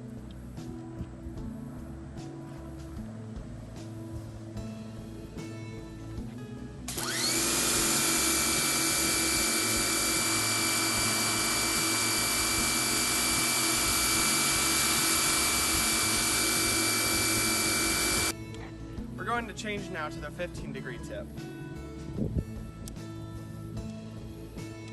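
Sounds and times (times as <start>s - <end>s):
pressure washer motor whine: 6.9s - 18.3s.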